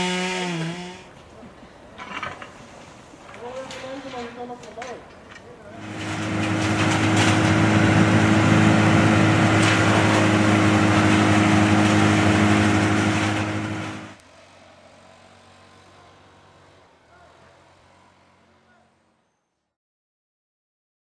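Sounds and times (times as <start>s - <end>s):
small petrol engine running: 5.8s - 18.7s.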